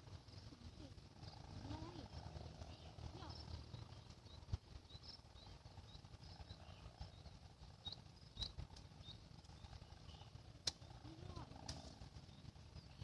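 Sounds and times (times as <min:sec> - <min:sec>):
low rumble: 0:00.0 - 0:13.0
faint high chirping: 0:00.4 - 0:13.0
sharp clicks: 0:10.6 - 0:10.9.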